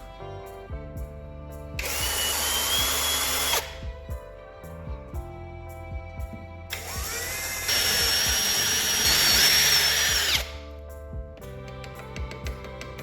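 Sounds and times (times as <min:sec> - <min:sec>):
background music with plucked notes: 0:00.0 - 0:13.0
power drill whining: 0:01.8 - 0:03.8, 0:06.7 - 0:10.5.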